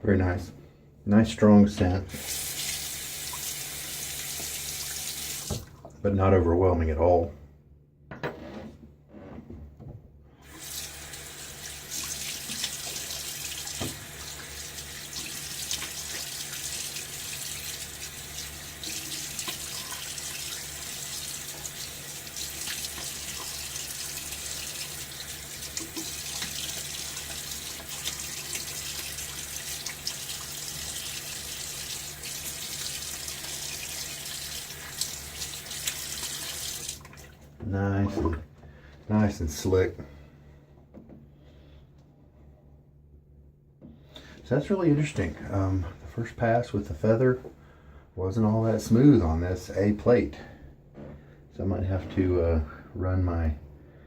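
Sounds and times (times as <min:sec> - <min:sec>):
water splashing into basin: 0:10.5 - 0:38.5.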